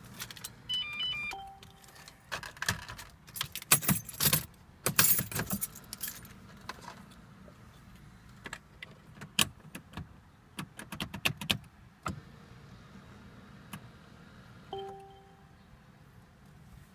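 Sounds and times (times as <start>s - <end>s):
short beep: 0.7s - 1.9s, 14.7s - 15.5s
keys jangling and clicking: 2.8s - 6.3s.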